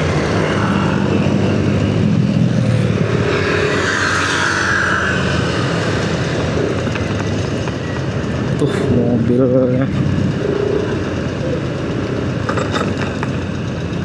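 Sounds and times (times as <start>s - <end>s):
rushing sound: 0.0s - 8.2s
motorcycle engine running: 0.0s - 14.0s
road and traffic noise: 0.0s - 14.0s.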